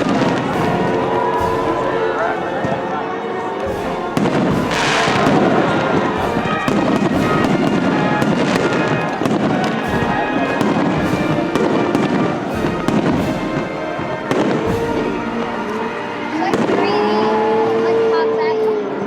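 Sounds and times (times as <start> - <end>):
fireworks bangs and crackles: 0.0 - 17.6
music playing: 0.0 - 19.0.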